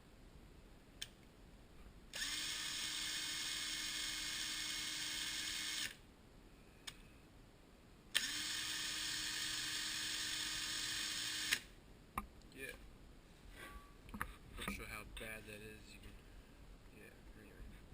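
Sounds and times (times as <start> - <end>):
small electric drill running: 2.1 - 6.0, 8.2 - 11.7.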